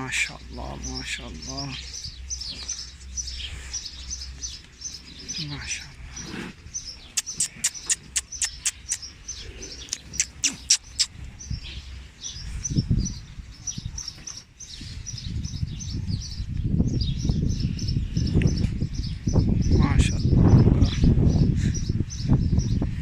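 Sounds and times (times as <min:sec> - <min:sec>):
small birds chirping: 0:00.0 - 0:23.0
sharp clicks: 0:09.9 - 0:11.1.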